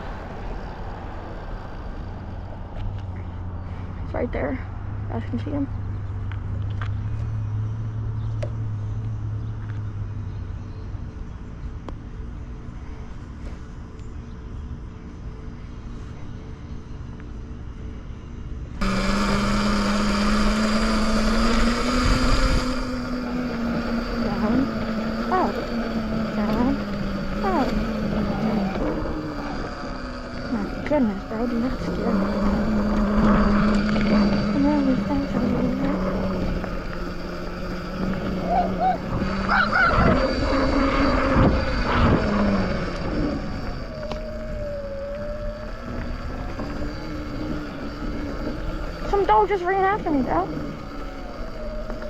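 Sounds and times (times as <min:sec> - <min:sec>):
electric bike motor whining: 0:00.0 - 0:11.2, 0:18.8 - 0:52.0
wind rushing over microphone: 0:18.8 - 0:52.0
small dog barking: 0:38.4 - 0:40.2.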